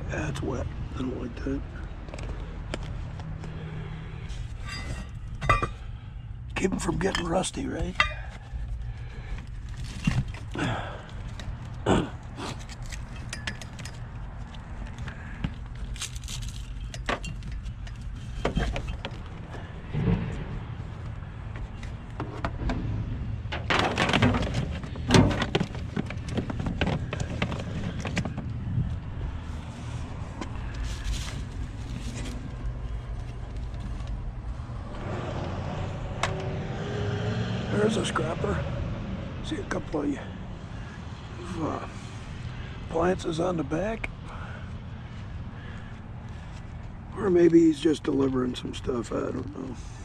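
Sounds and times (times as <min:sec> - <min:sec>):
scrap metal clattering: 0:04.5 - 0:05.9, 0:22.2 - 0:28.4.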